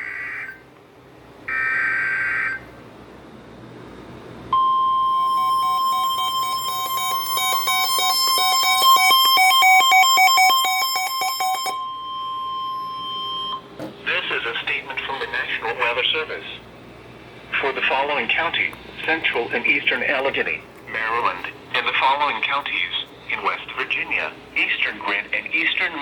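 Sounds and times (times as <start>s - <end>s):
steady alert tone: 4.6s - 12.6s
screeching data tones: 5.0s - 11.8s
fast electronic beeping: 5.2s - 11.8s.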